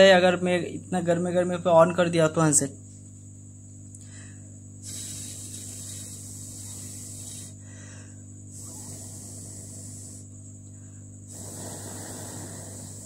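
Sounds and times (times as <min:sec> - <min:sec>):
steady electrical hum: 0:00.0 - 0:13.0
air blast hissing: 0:04.8 - 0:10.4, 0:11.2 - 0:13.0.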